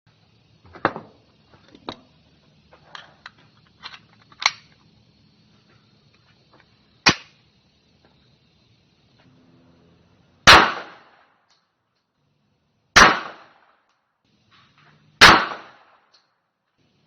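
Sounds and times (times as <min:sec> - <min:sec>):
pistol shots: 0:10.4 - 0:11.2, 0:13.0 - 0:13.6, 0:15.2 - 0:16.0.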